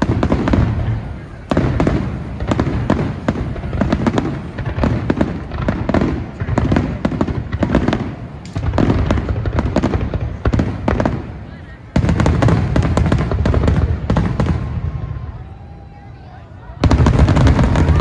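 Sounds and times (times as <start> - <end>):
firework shell bursts crackling: 0.0 - 13.1
deep firework booms: 0.0 - 15.5, 16.8 - 18.0.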